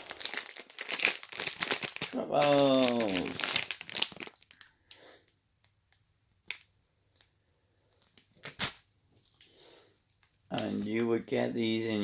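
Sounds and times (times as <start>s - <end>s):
snack packaging rustling: 0.0s - 5.0s.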